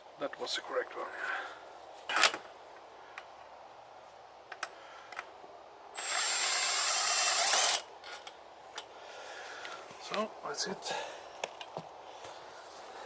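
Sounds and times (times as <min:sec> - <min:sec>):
cordless ratchet whining: 0:06.0 - 0:07.9.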